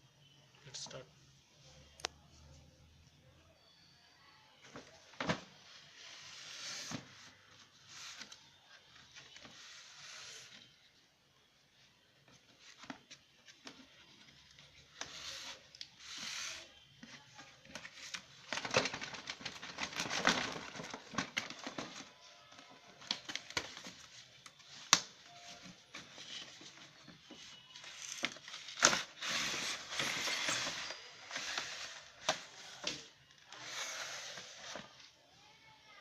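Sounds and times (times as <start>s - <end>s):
packaging rustling and tearing: 17.7s - 35.0s.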